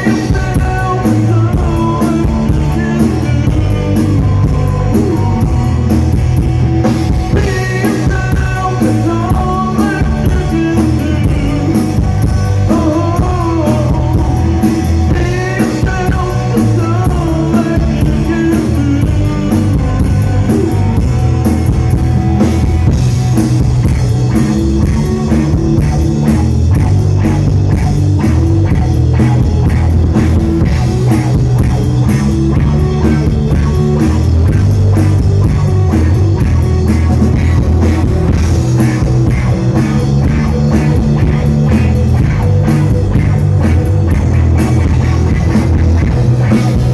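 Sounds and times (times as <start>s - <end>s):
person singing: 0.0s - 6.1s, 7.2s - 21.5s
rock music with drums and guitar: 0.0s - 46.9s.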